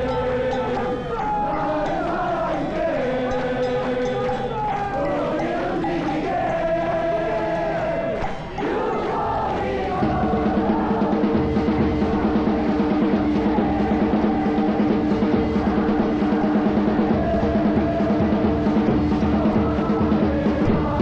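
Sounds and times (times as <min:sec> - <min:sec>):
crowd chanting: 0:00.0 - 0:21.0
music with fast drum beat: 0:08.2 - 0:21.0.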